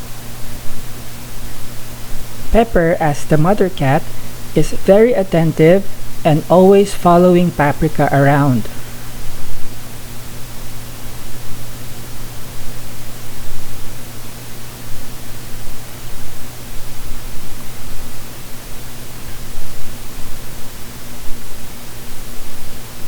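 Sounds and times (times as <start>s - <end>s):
constant low hum: 0.0s - 11.6s
ceiling fan hiss: 0.0s - 23.0s.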